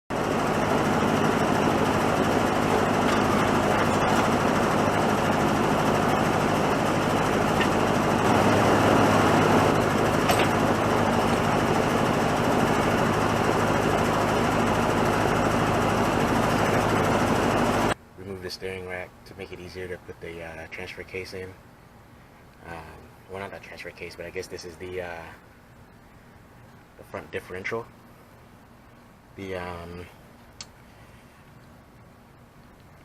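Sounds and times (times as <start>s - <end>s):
machine running with low hum: 0.1s - 18.0s.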